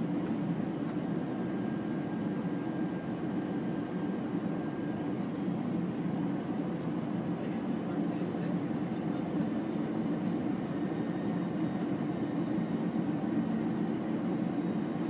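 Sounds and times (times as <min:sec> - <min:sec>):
jet airliner cabin noise: 0:00.0 - 0:15.0.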